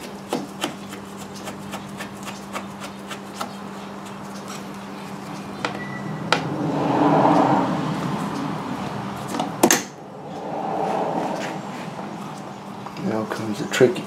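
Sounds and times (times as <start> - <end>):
steady low hum: 3.7 - 13.6.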